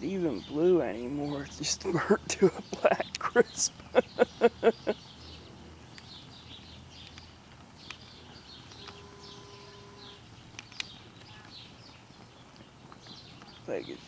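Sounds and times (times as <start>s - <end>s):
small birds chirping: 0.0s - 14.0s
sharp clicks: 7.0s - 11.6s
brief steady tone: 8.6s - 10.2s.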